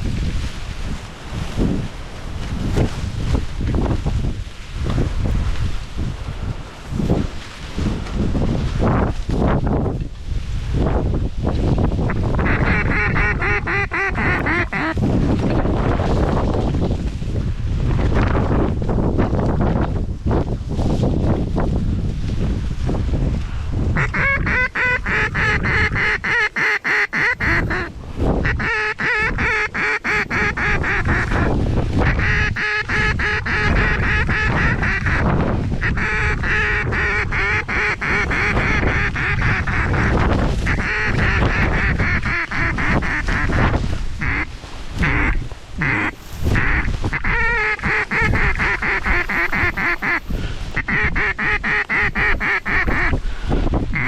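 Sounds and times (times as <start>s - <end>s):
wind rumble on microphone: 0.0s - 54.0s
ducks quacking: 12.1s - 15.1s, 24.0s - 53.2s.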